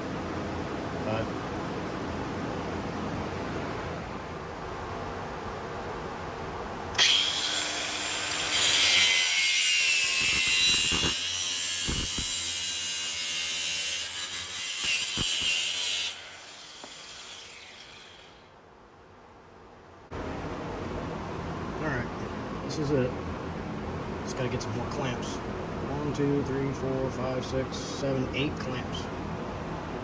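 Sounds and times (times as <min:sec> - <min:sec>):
power tool whining: 0:07.0 - 0:18.4.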